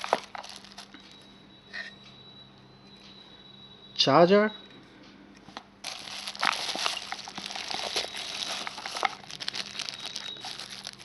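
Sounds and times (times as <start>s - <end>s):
plastic packaging crinkling: 0.0s - 1.2s, 5.8s - 11.0s.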